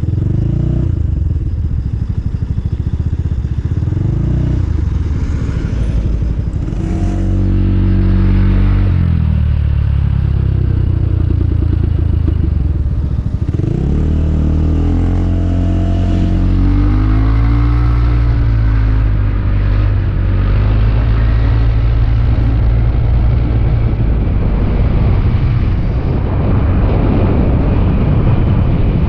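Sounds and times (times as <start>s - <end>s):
motor scooter engine: 0.0s - 22.6s.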